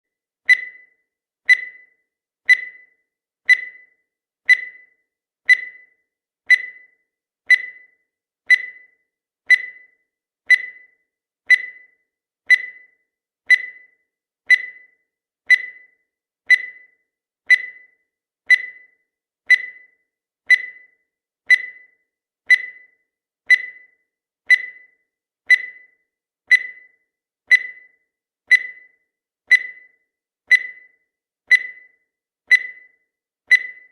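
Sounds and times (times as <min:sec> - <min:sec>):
short high timer blips: 0:27.5 - 0:33.9.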